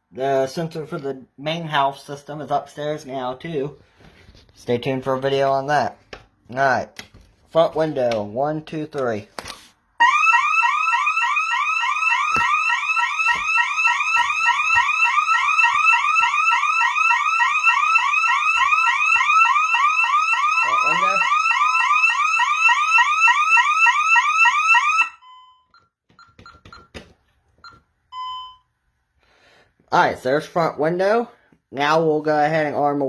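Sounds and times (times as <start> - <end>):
alarm siren rising sweep: 10.0 - 25.3
keypad beeps and clicks: 25.2 - 28.6.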